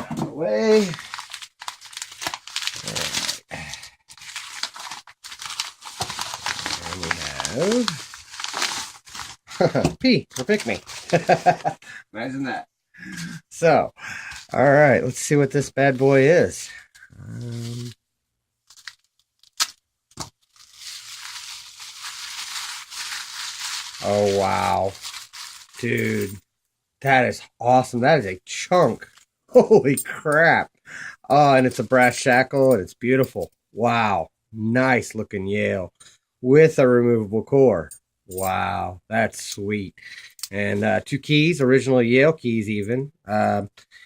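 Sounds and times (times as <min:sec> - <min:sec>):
packaging crinkling: 0:00.7 - 0:11.7, 0:18.6 - 0:26.3.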